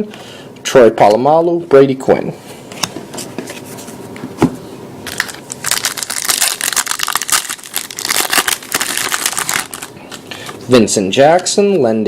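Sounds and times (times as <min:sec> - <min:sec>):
wrapper tearing and crinkling: 0:05.1 - 0:10.2.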